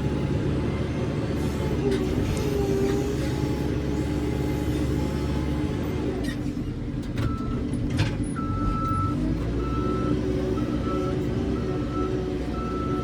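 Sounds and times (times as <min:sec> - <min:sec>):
diesel engine running under load: 0:00.0 - 0:13.0
reversing alarm beeping: 0:08.4 - 0:13.0.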